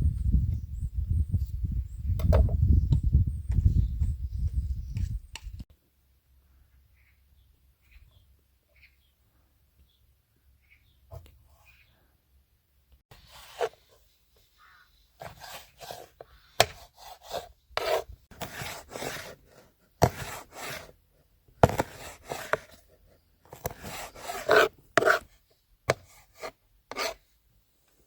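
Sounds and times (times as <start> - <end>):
rasping scraping strokes: 13.1 - 14.1, 15.2 - 21.0, 21.6 - 27.3.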